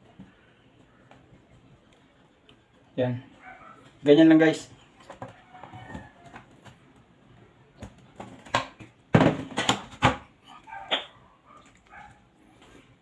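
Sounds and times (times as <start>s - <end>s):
dog barking: 3.4s - 3.9s, 10.6s - 12.3s.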